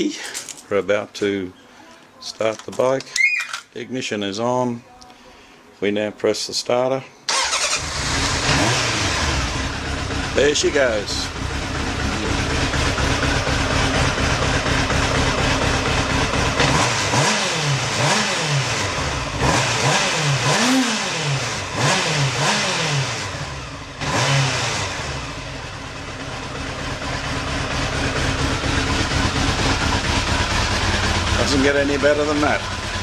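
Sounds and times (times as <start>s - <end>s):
motorcycle engine revving and idling: 7.3s - 33.0s.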